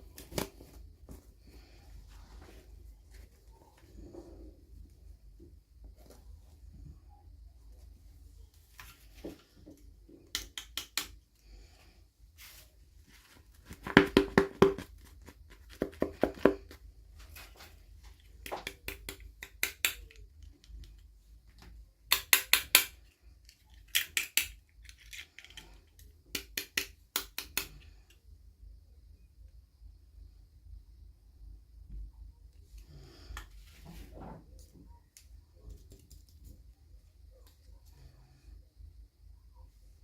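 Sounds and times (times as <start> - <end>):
plastic toy pieces clicking: 18.6 - 21.1, 22.1 - 27.8.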